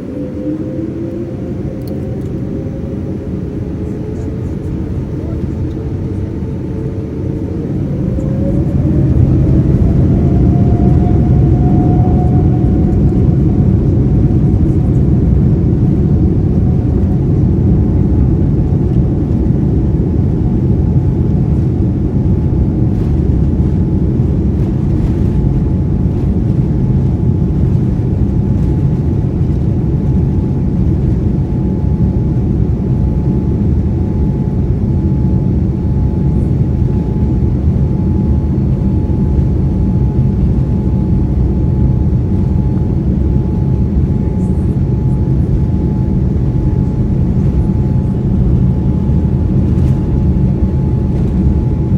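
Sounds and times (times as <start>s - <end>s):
jet engines spooling up: 0.0s - 18.5s.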